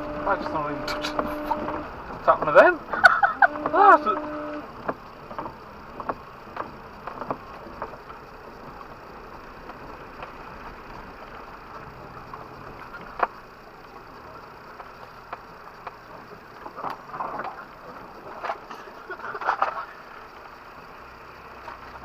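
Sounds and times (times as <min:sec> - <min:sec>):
off-road vehicle driving: 0:00.0 - 0:22.0
sharp knocks and clunks: 0:03.5 - 0:08.8.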